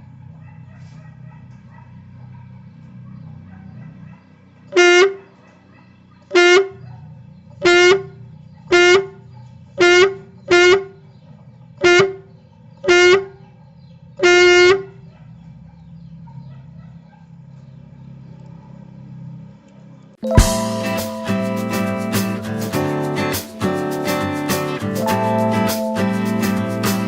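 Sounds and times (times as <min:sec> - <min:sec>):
buzzy horn-like toy gun blasts: 0:04.8 - 0:05.2, 0:06.4 - 0:06.8, 0:07.6 - 0:08.1, 0:08.7 - 0:09.2, 0:09.8 - 0:11.0, 0:11.8 - 0:12.2, 0:12.9 - 0:13.4, 0:14.2 - 0:14.9.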